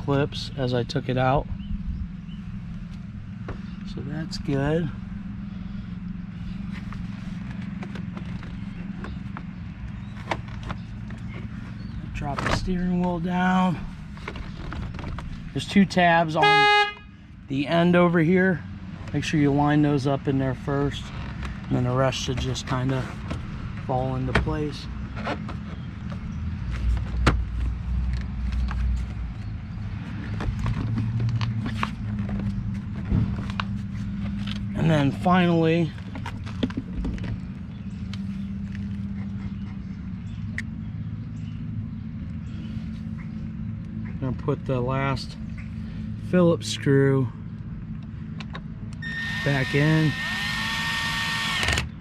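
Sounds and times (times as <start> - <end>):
steady low hum: 0.0 - 24.0.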